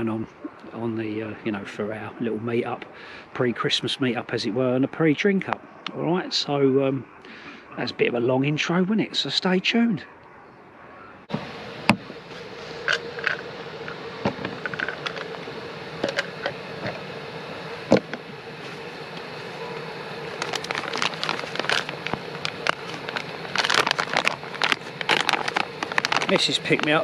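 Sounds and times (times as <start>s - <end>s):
gas stove hissing: 11.3s - 27.0s
gear clicking and crackling: 12.8s - 15.4s, 20.3s - 27.0s.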